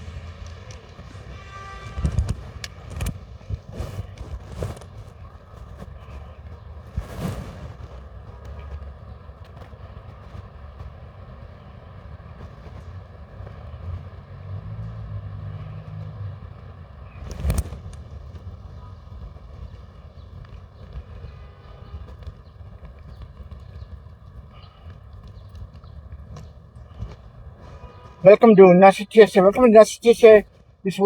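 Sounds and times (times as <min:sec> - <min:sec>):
vehicle engine humming past: 0:00.0 - 0:04.4, 0:08.6 - 0:21.0
traffic rumble: 0:00.0 - 0:31.0.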